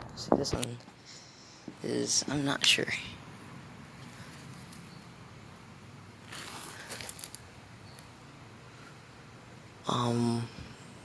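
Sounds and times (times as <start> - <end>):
faint rustling: 3.4 - 5.2, 6.2 - 8.1.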